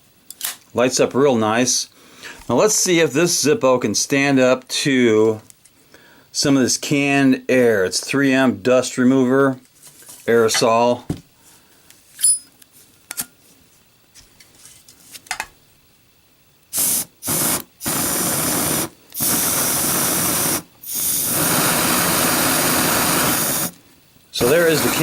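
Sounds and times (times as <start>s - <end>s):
aerosol duster hissing: 16.7s - 23.8s, 24.4s - 25.0s.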